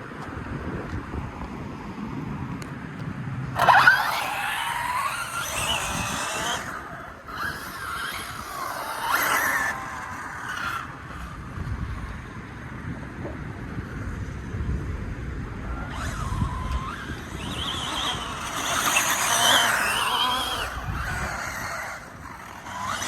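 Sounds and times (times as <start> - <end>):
electric rc car motor whining: 3.6 - 11.8, 15.5 - 23.0.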